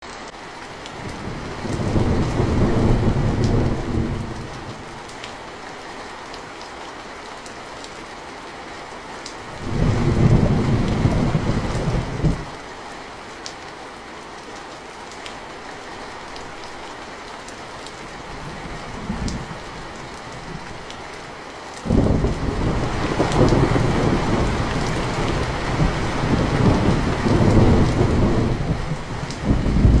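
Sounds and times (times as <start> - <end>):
steady rain hiss: 0.0 - 30.0
low rumble of thunder: 1.0 - 5.0, 9.6 - 12.5, 18.3 - 20.9, 21.9 - 30.0.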